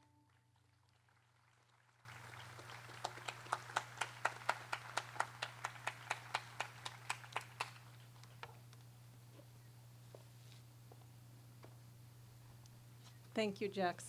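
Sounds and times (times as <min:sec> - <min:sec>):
hands clapping: 0:02.1 - 0:08.6.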